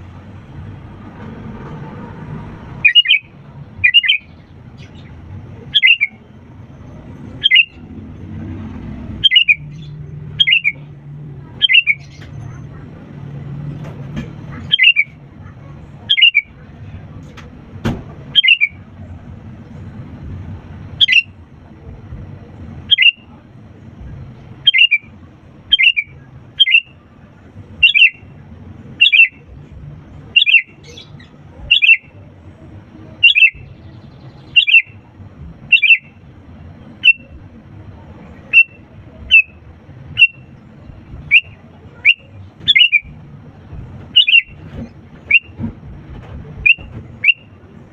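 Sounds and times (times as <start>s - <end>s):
bird calling: 2.8s - 5.1s, 5.7s - 6.2s, 7.4s - 7.8s, 9.2s - 10.9s, 11.6s - 12.3s, 14.5s - 15.2s, 16.1s - 16.5s, 18.3s - 18.8s, 21.0s - 21.3s, 22.9s - 23.4s, 24.6s - 25.1s, 25.7s - 27.0s, 27.8s - 28.3s, 29.0s - 29.4s, 30.3s - 32.2s, 33.2s - 33.7s, 34.5s - 35.0s, 35.7s - 36.2s, 38.5s - 40.4s, 41.3s - 43.2s, 44.1s - 44.6s, 46.6s - 47.5s.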